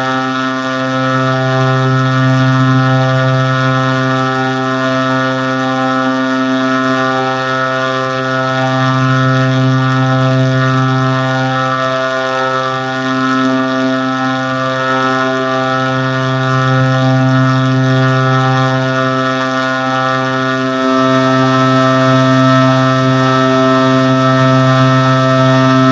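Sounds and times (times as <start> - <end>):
buzzy low drone: 0.0 - 25.9.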